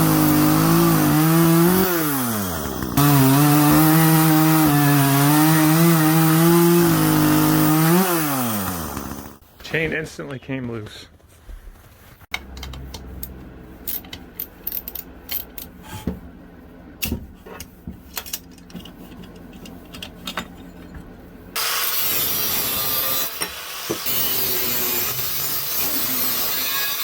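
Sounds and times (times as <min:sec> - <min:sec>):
loud metal cutting noise: 0:00.0 - 0:09.4, 0:21.6 - 0:27.0.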